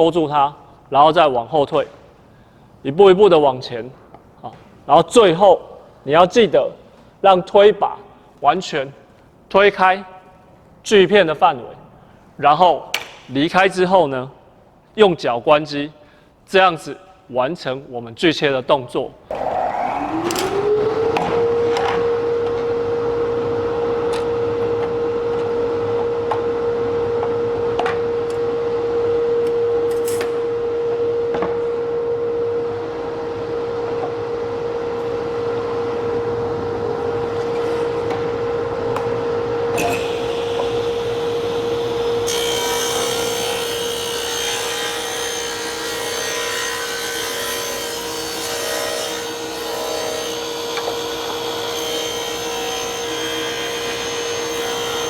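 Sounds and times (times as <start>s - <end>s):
table saw ripping wood: 19.3s - 22.1s, 39.8s - 55.0s.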